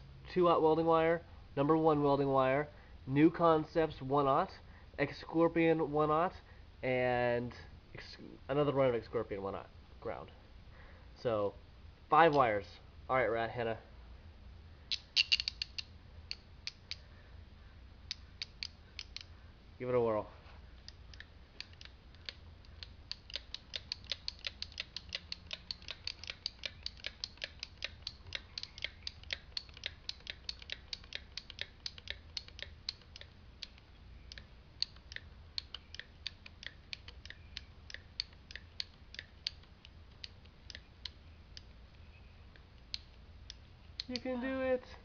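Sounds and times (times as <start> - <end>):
ratchet cable cutters clicking: 14.9 - 17.0, 18.1 - 19.3, 20.8 - 41.7.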